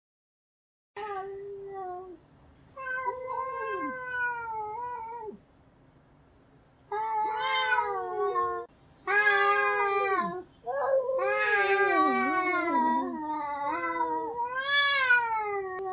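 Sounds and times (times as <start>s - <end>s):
cats yowling in a fight: 2.8s - 5.4s, 6.9s - 15.9s.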